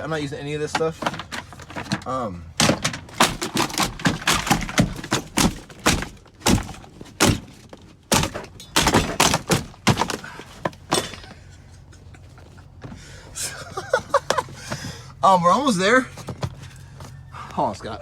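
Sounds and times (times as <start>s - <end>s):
plastic parts cracking and knocking: 0.6s - 11.4s.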